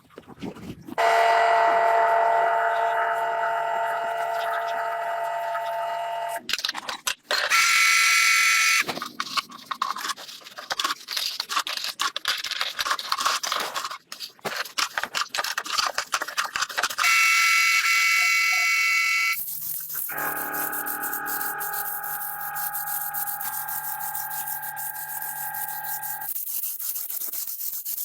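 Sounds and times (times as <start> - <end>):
power tool whine: 1.0 - 6.4, 20.1 - 26.3
rough scraping and grinding: 19.6 - 26.3.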